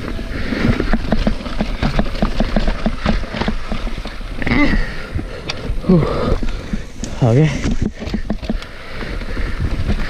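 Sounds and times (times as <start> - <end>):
bike knocks and rattles: 0.0 - 10.0
rumble of tyres and wind: 0.0 - 10.0
person grunting: 5.8 - 6.4.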